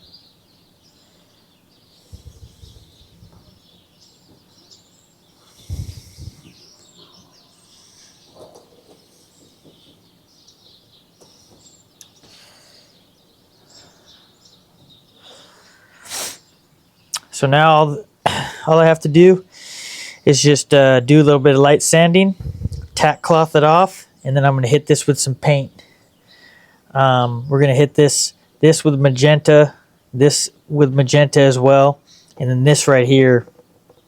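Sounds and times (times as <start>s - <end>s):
faint bird chirps: 0.0s - 17.4s.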